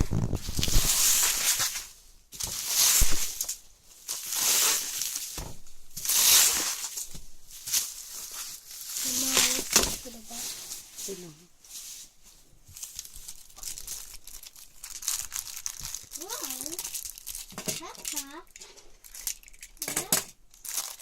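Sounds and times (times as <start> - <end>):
packaging rustling and crinkling: 0.0 - 21.0.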